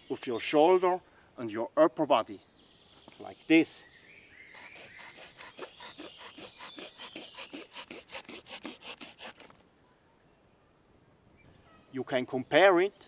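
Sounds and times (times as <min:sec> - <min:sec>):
saw blade cutting wooden stick: 0:04.6 - 0:09.6.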